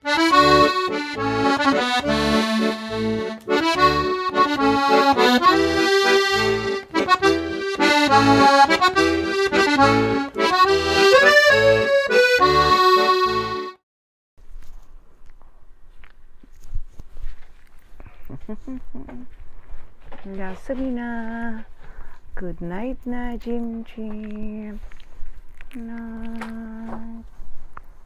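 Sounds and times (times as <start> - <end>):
instrumental music with pulsing bass: 0.0 - 13.8.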